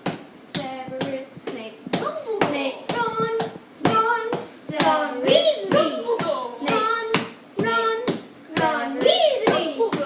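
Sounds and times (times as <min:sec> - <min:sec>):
children singing a chant: 0:02.5 - 0:10.0.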